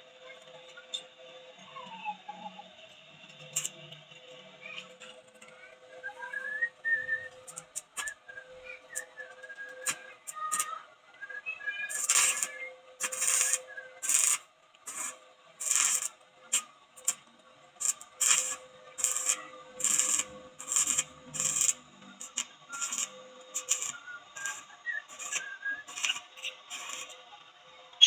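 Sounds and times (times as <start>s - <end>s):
welding machine crackling bursts: 11.9s - 17.2s, 17.8s - 27.2s
steady hum: 15.0s - 27.3s.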